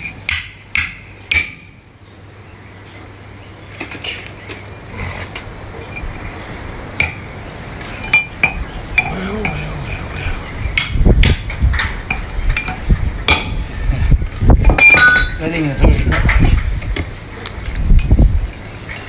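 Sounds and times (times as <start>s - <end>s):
sharp metal taps: 0.0s - 1.7s
metal parts clinking and knocking: 14.7s - 16.7s.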